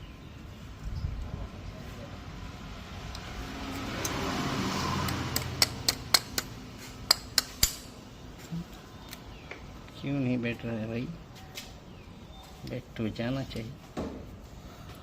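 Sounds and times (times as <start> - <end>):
metal tools clicking: 5.1 - 8.0.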